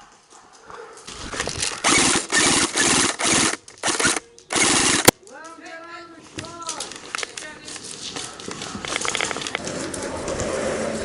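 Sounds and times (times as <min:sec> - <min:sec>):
sharp crack: 0:01.1 - 0:05.5
buzzing gearbox: 0:01.4 - 0:05.1
airsoft guns firing bursts: 0:01.7 - 0:05.1.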